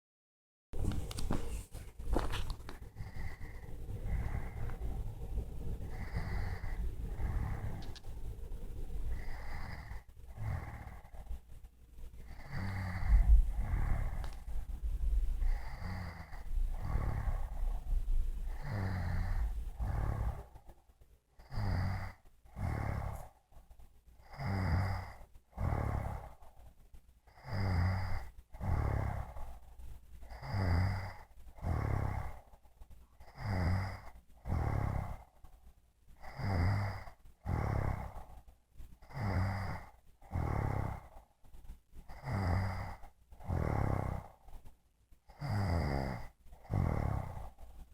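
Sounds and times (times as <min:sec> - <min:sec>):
low rumble: 0:00.8 - 0:12.4, 0:13.0 - 0:20.8
woman snoring: 0:02.9 - 0:04.8, 0:05.8 - 0:08.0, 0:09.1 - 0:11.3, 0:12.2 - 0:14.5, 0:15.4 - 0:20.7, 0:21.4 - 0:23.3, 0:24.2 - 0:26.4, 0:27.3 - 0:29.6, 0:30.2 - 0:32.6, 0:33.2 - 0:35.4, 0:36.2 - 0:38.4, 0:39.0 - 0:41.2, 0:42.1 - 0:44.5, 0:45.3 - 0:47.6.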